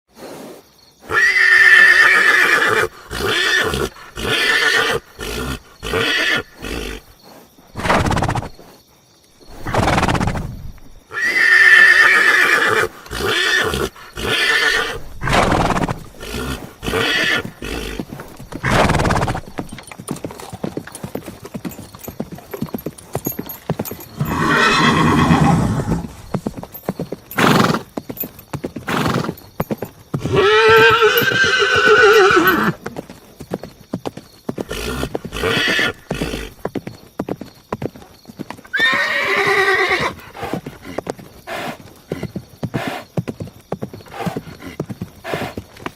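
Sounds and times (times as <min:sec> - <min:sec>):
horse whinnying: 0:01.0 - 0:07.2, 0:07.8 - 0:08.6, 0:09.5 - 0:21.2, 0:22.0 - 0:26.6, 0:27.3 - 0:27.9, 0:28.8 - 0:29.4, 0:30.1 - 0:32.9, 0:34.6 - 0:36.6, 0:38.7 - 0:41.8
hooves clopping: 0:12.4 - 0:45.9.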